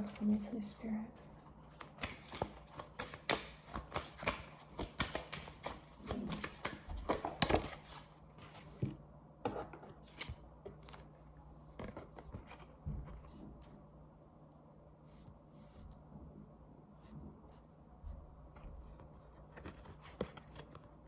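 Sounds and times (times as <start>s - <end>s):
cards being shuffled: 1.4s - 8.8s.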